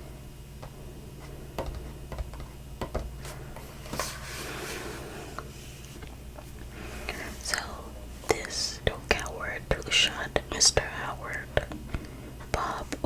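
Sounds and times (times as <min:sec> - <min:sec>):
clicks and taps handling book: 0:01.6 - 0:04.2
paper rustle: 0:03.2 - 0:06.0.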